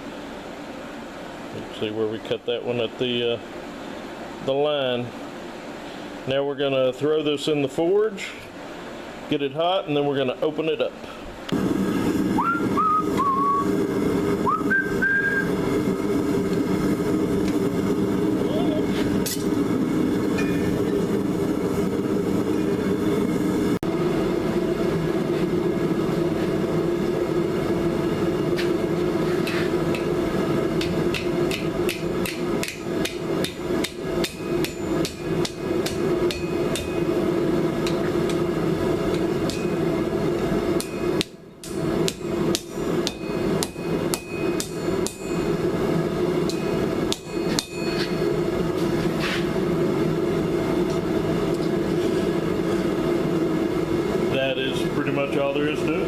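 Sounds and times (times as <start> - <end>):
forge roaring: 11.5 - 56.0
hammer striking hot steel pipe: 20.3 - 21.0, 29.4 - 30.2, 30.8 - 37.2, 39.1 - 39.9, 40.8 - 45.7, 46.4 - 48.4.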